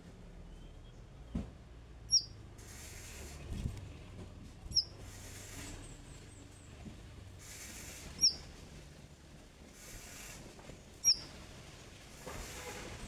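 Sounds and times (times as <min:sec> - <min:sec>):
bird chirps sliding down: 0:02.1 - 0:02.3, 0:04.7 - 0:04.9, 0:08.2 - 0:08.4, 0:11.0 - 0:11.3.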